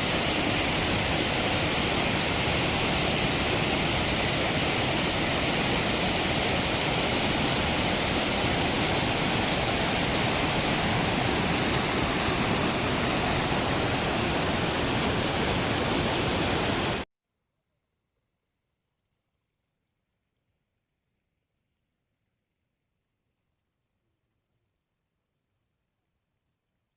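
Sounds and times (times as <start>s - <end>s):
water rushing: 0.0s - 17.0s.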